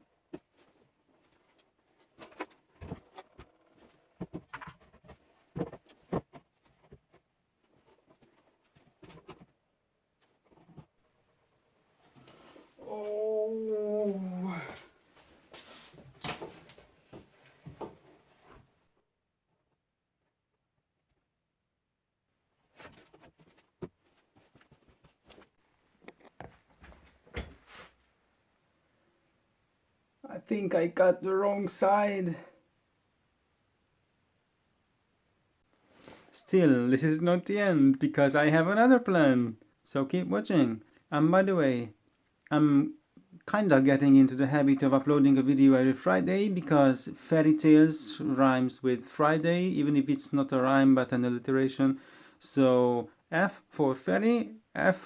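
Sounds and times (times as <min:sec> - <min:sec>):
wood knocking and scraping: 0:00.3 - 0:09.6.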